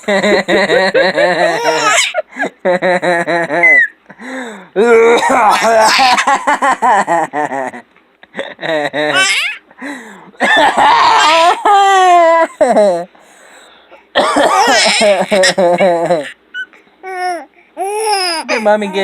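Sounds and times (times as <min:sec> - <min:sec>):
baby laughing: 0:00.6 - 0:04.0, 0:05.3 - 0:06.7, 0:09.0 - 0:09.6, 0:10.5 - 0:12.3, 0:14.3 - 0:19.0.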